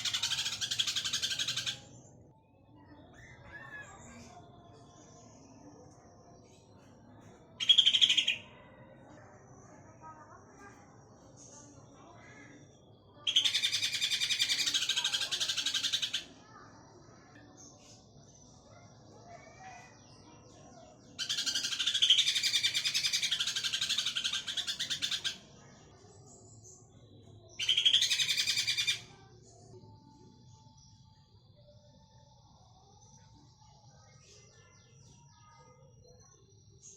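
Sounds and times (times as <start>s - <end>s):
bird rapid rattling chatter: 0.0s - 1.8s, 13.3s - 16.3s, 21.2s - 25.4s
faint bird chirps: 0.0s - 36.9s.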